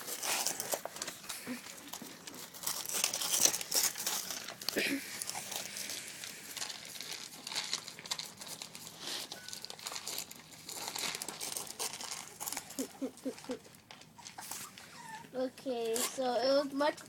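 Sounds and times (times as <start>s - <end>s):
puppies eating: 0.0s - 17.0s
puppy squeaks: 14.2s - 15.3s.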